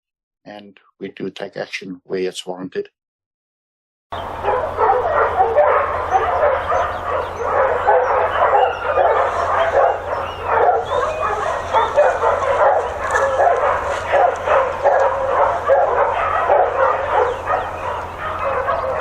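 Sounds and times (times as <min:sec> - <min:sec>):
dogs barking and yipping: 0:04.1 - 0:19.0.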